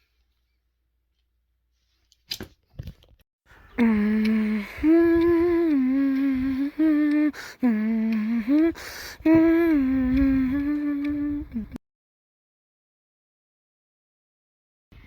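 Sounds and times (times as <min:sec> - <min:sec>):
person humming: 0:03.6 - 0:11.8.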